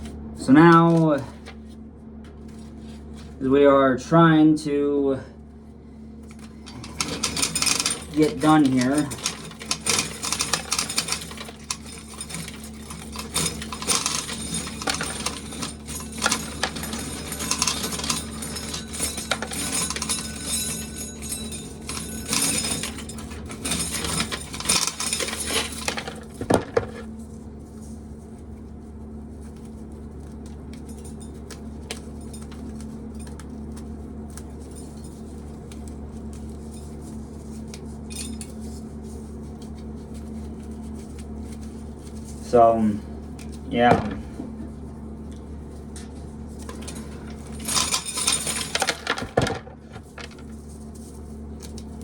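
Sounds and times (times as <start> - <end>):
steady hum: 0.0 - 52.0
corn kernels rattling into metal pail: 6.7 - 27.0.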